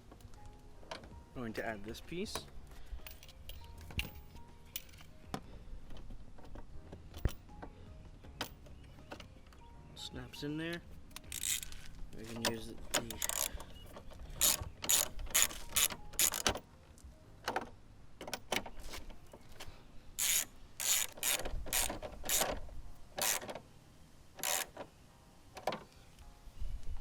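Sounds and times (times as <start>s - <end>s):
hand ratchet clicking: 11.1s - 13.7s, 14.3s - 16.6s, 20.2s - 22.6s, 23.2s - 23.6s, 24.4s - 24.8s.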